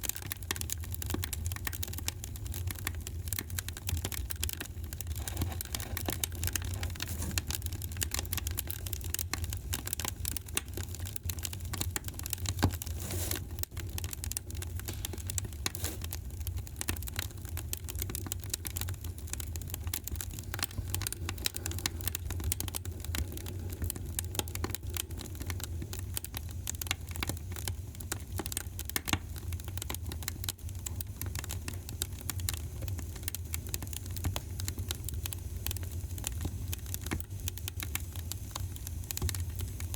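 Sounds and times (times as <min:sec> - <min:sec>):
fireplace fire crackling: 0:00.0 - 0:39.9.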